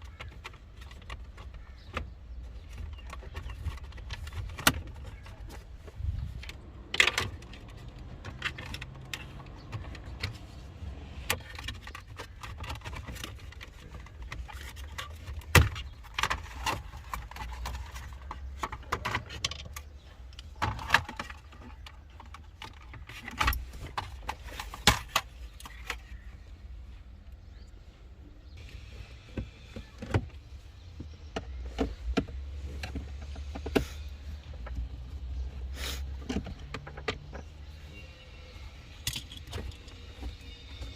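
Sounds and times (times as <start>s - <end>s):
clicks and rattles of hand tools: 0.0s - 26.4s, 38.8s - 40.9s.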